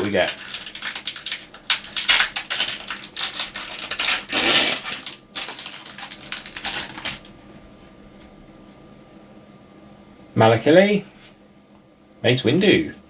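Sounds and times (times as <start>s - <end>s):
wrapper crinkling and tearing: 0.0s - 7.3s.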